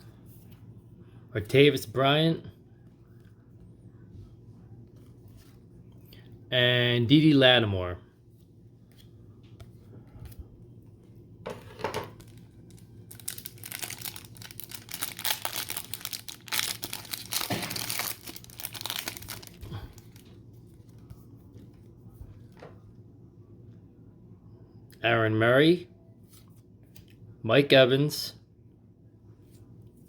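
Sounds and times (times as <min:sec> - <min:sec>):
plastic wrapper crinkling: 0:12.0 - 0:21.0.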